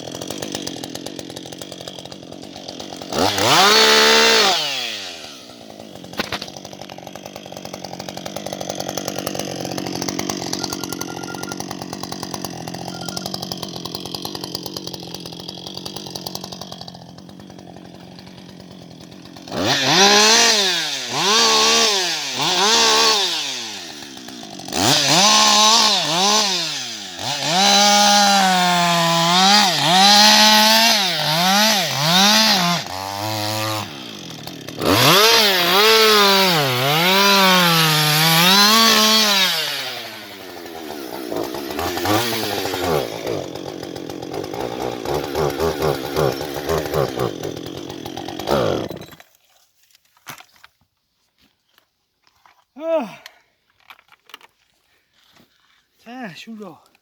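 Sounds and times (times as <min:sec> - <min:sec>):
chainsaw running and revving: 0:00.0 - 0:49.3.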